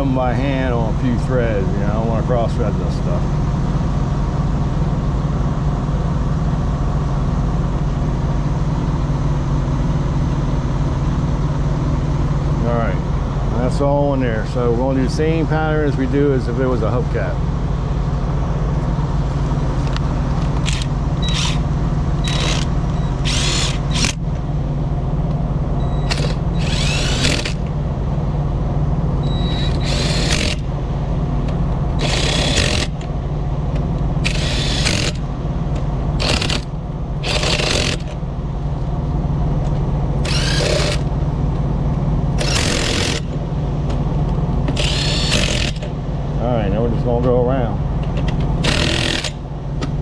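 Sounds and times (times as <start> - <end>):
low engine hum: 0.0 - 50.0
impact wrench bursts: 20.5 - 24.2, 26.0 - 27.8, 29.2 - 30.7, 32.0 - 33.1, 34.2 - 35.2, 36.2 - 38.2, 40.2 - 41.1, 42.4 - 43.4, 44.7 - 46.0, 48.6 - 49.4.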